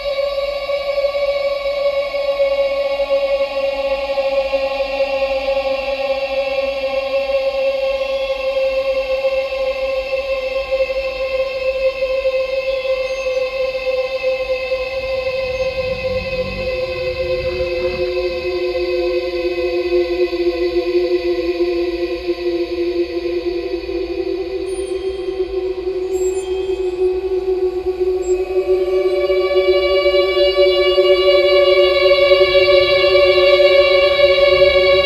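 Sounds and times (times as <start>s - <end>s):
eerie ambient drone music: 0.0s - 35.0s.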